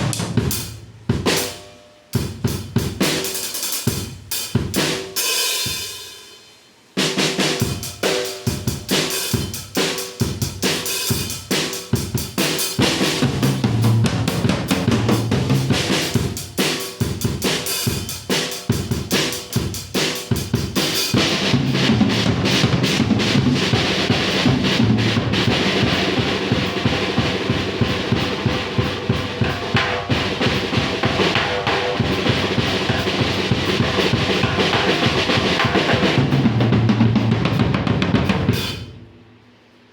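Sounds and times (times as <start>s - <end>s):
drum kit playing: 0.0s - 6.4s, 7.0s - 39.2s
cymbal wash: 0.0s - 13.2s.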